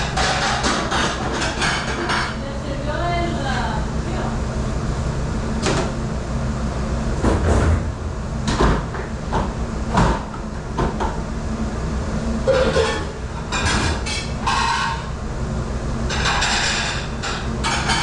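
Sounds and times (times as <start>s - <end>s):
dishes and racks clattering: 0.0s - 2.4s, 12.4s - 15.2s, 16.1s - 18.0s
machinery humming: 0.0s - 18.0s.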